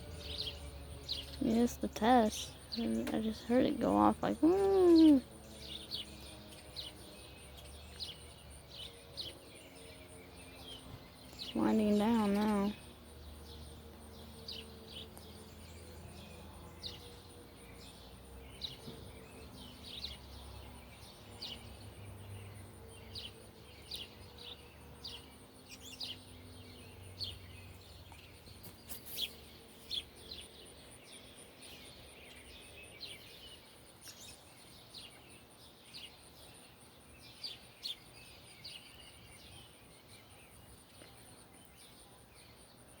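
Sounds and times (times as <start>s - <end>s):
distant fire siren winding down: 0.0s - 1.8s
small birds chirping: 0.0s - 43.0s.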